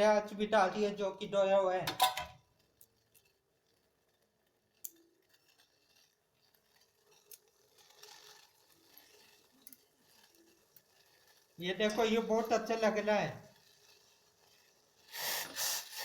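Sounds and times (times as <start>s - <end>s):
faint clicks of herbs handled: 2.5s - 12.8s.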